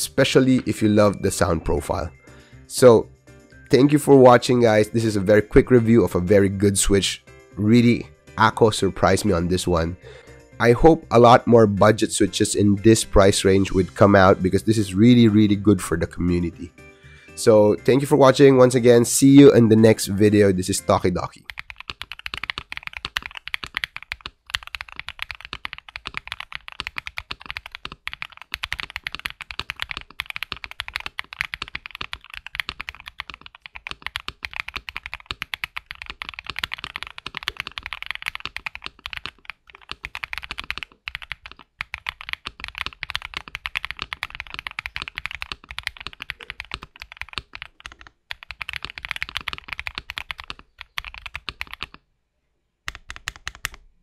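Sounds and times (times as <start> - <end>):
fast typing on mechanical keyboard: 21.5 - 52.0, 52.9 - 53.8.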